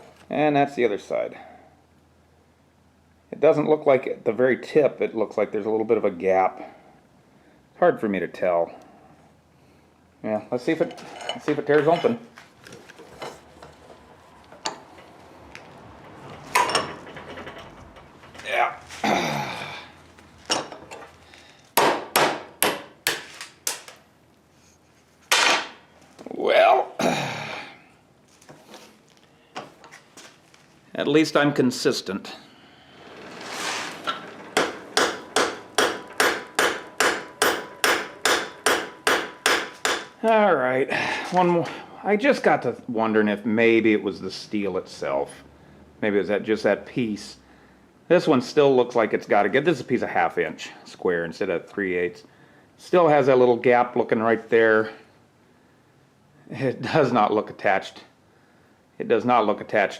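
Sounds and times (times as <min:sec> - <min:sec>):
loud ringing metal clank: 0:33.1 - 0:40.2
hammer striking steel on anvil: 0:34.6 - 0:40.2.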